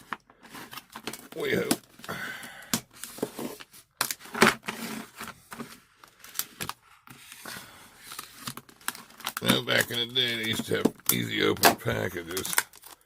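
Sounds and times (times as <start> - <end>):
crackling plastic: 0.0 - 13.0
plastic packaging being cut: 8.2 - 13.0.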